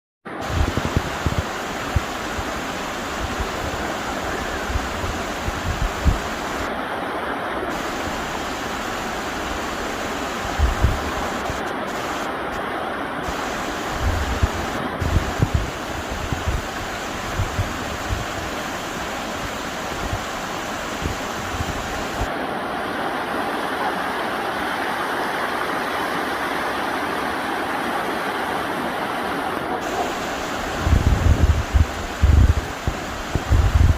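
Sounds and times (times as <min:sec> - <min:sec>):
river water rushing over rocks: 0:00.3 - 0:33.9
wind buffeting microphone: 0:00.4 - 0:06.7, 0:09.2 - 0:12.2, 0:13.3 - 0:22.3, 0:29.8 - 0:33.9.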